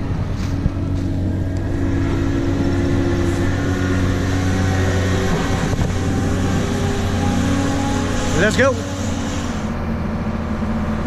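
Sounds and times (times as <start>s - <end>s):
tractor diesel engine running: 0.0s - 11.0s.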